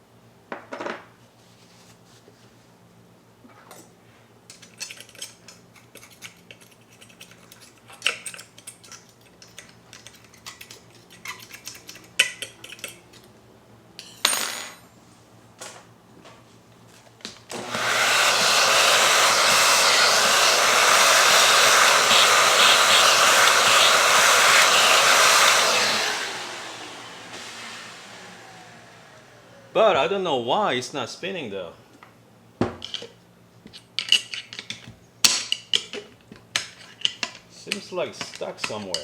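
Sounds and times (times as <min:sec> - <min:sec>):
air blower rushing: 0:17.5 - 0:30.2
clicks from handling grinder parts: 0:33.7 - 0:39.0.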